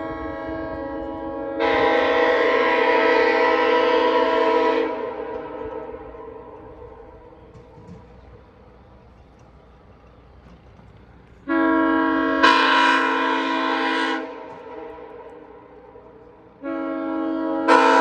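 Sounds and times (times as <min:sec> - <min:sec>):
air horn chord blasts: 0:11.5 - 0:15.0, 0:16.6 - 0:18.0.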